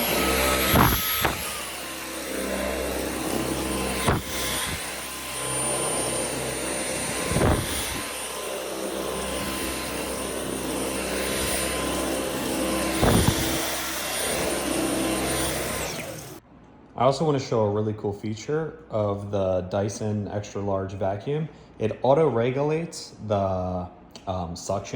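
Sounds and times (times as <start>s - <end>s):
vacuum cleaner whine: 0.0s - 16.4s.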